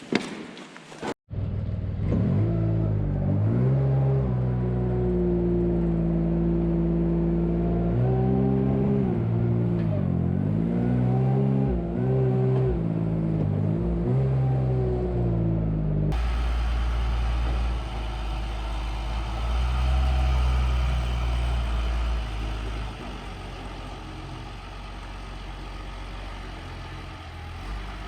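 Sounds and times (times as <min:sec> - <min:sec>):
tractor engine running: 0:16.1 - 0:28.0.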